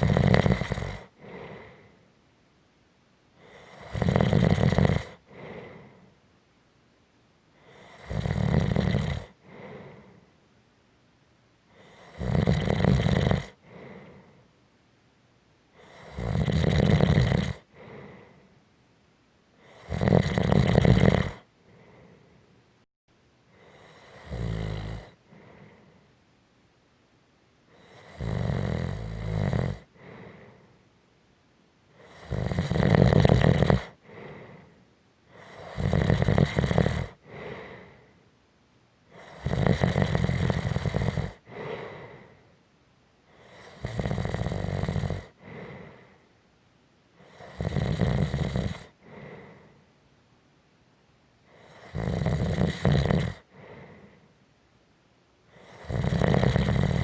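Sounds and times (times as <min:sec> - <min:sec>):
person snoring: 0:00.0 - 0:02.0, 0:03.4 - 0:06.1, 0:07.6 - 0:10.2, 0:11.8 - 0:14.3, 0:15.8 - 0:18.4, 0:19.6 - 0:22.2, 0:23.6 - 0:26.0, 0:27.8 - 0:30.7, 0:32.0 - 0:34.8, 0:35.4 - 0:38.0, 0:39.2 - 0:42.4, 0:43.4 - 0:46.2, 0:47.2 - 0:49.8, 0:51.6 - 0:54.2, 0:55.5 - 0:57.0.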